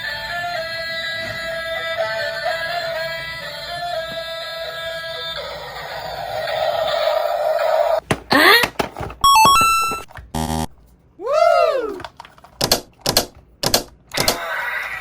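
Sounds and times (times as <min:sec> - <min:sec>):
electronic beep tune: 0:09.2 - 0:10.7
electronic buzz: 0:09.3 - 0:10.7
sharp clicks: 0:12.6 - 0:14.4.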